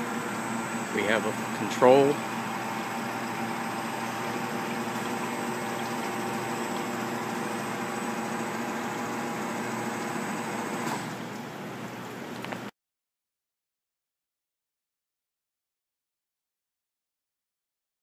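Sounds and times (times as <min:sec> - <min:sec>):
polishing lathe motor hum: 0:00.0 - 0:10.9.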